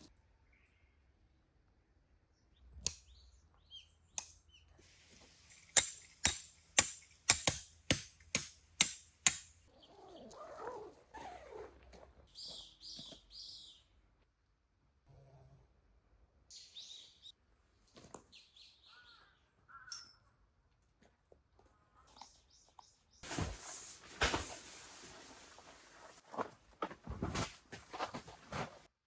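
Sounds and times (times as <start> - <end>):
soft rustling: 23.2 - 28.9.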